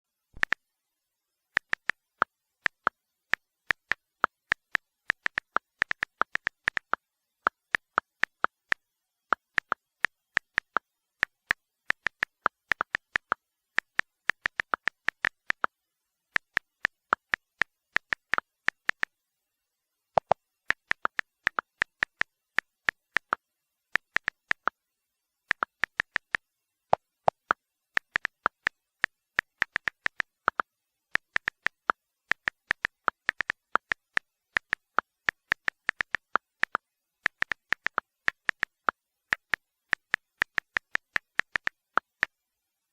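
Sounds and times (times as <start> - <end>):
keyboard key clicks: 20.2 - 22.3.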